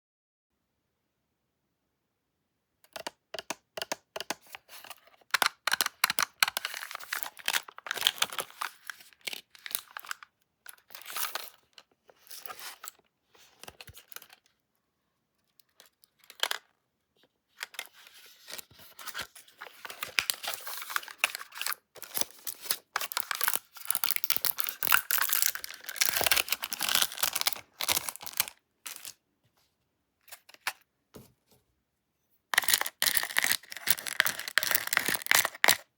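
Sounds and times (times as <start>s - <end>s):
candy wrapper tearing and crinkling: 20.1s - 29.2s, 32.6s - 35.9s.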